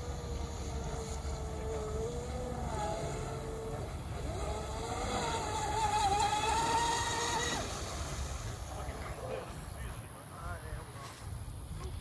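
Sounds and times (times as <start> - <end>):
electric boat motor whining: 0.0 - 8.9.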